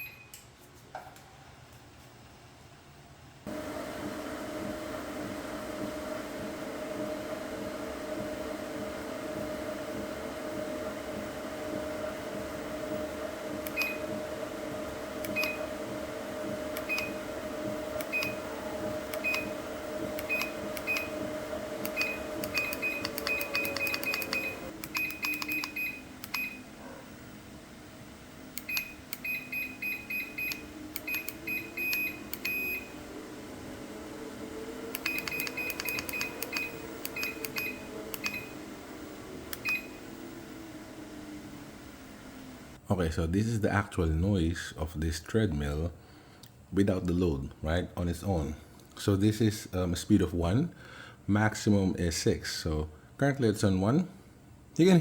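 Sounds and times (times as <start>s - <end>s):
short beeps: 0.0s - 0.4s
treadmill motor humming: 3.4s - 42.8s.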